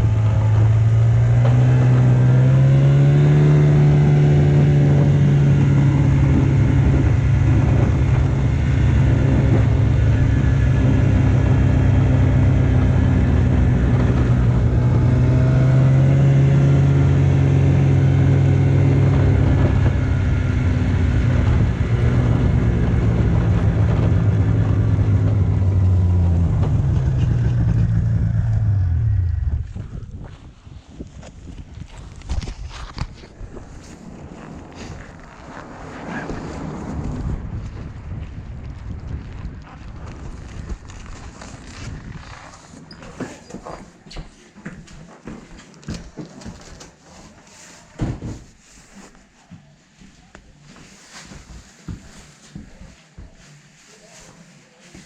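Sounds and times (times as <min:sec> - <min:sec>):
vehicle engine running: 0:00.0 - 0:30.4.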